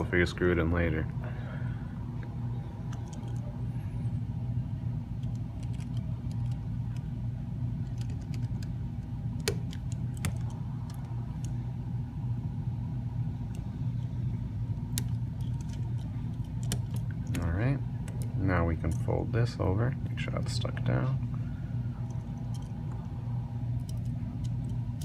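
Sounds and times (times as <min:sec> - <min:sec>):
low background hum: 0:00.0 - 0:25.0
tweezers clicking and tapping metal: 0:14.8 - 0:19.1, 0:23.7 - 0:25.0.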